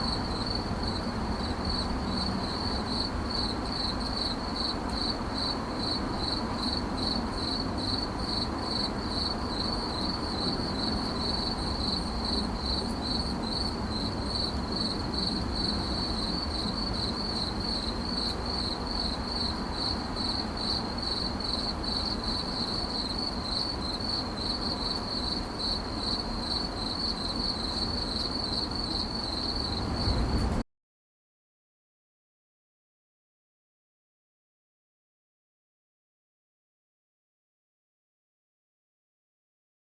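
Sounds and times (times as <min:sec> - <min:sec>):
cricket chirping: 0:00.0 - 0:30.5
low background rumble: 0:29.2 - 0:30.6.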